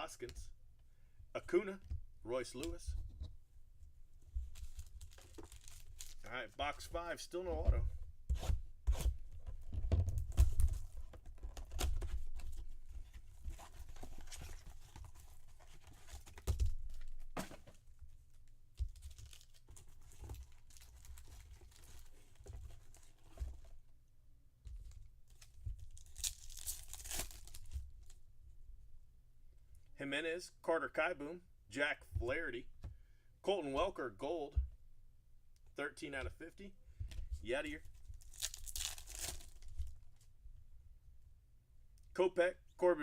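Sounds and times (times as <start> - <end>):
wrappers crinkling: 4.5 - 6.3, 25.9 - 28.2, 37.9 - 40.0
packaging being torn open: 26.0 - 28.2, 38.2 - 39.7.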